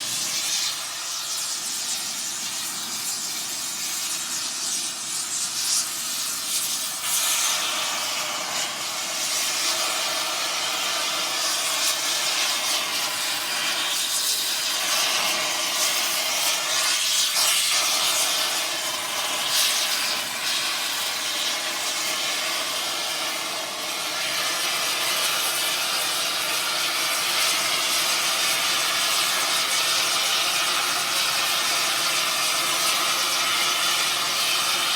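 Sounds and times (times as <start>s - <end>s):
air torch hissing: 0.0s - 34.9s.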